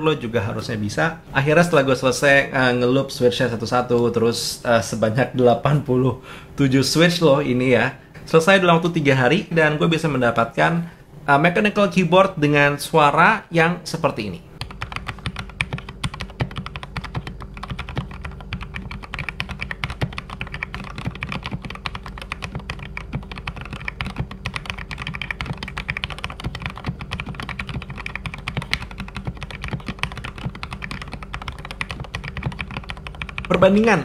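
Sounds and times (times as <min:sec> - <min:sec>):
typing on mechanical keyboard: 0:14.6 - 0:33.9.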